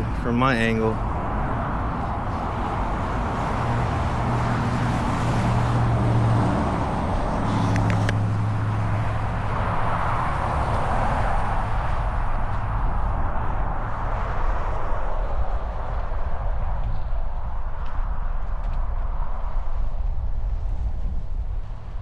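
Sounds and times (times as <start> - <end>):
vehicle engines humming: 0.0 - 14.0
tyre noise of passing traffic: 0.0 - 22.0.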